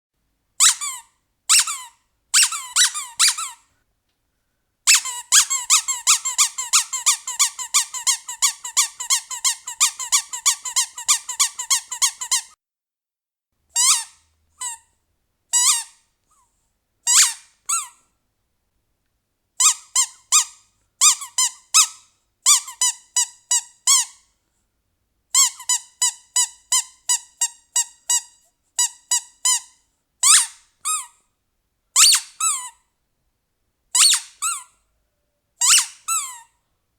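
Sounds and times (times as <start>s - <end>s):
rubber squeaky toy squeaking: 0.6s - 3.6s, 4.9s - 12.6s, 13.8s - 14.9s, 15.5s - 16.0s, 17.1s - 18.0s, 19.6s - 24.2s, 25.3s - 31.2s, 32.0s - 32.8s, 34.0s - 34.8s, 35.6s - 36.5s.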